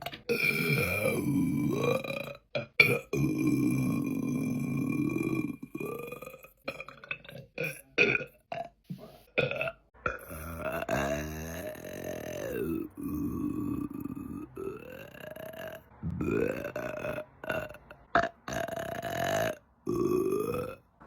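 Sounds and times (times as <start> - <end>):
woman burping: 0.1 - 8.7, 9.4 - 20.8.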